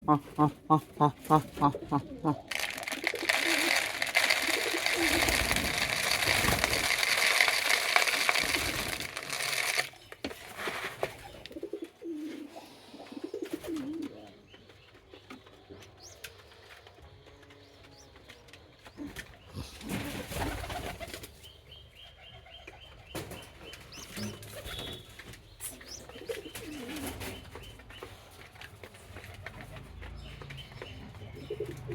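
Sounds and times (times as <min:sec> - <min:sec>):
pigeons cooing: 0:00.0 - 0:05.8, 0:11.1 - 0:14.6, 0:18.8 - 0:21.1, 0:25.9 - 0:27.4, 0:31.0 - 0:31.9.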